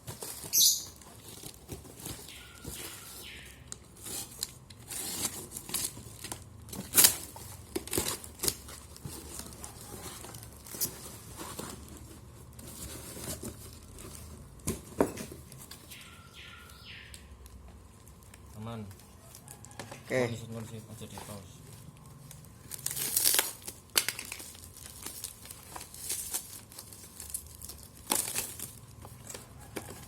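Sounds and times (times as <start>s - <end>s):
packaging tearing and rustling: 0.0s - 16.1s, 22.2s - 30.0s.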